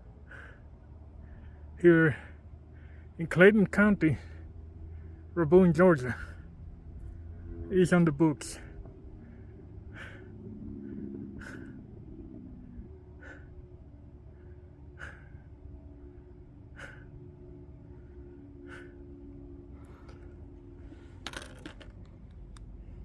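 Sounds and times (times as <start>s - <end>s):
faint low hum: 0.0s - 23.0s
person breathing hard: 0.1s - 3.2s, 8.6s - 21.5s
clicks and rustling: 21.2s - 22.6s.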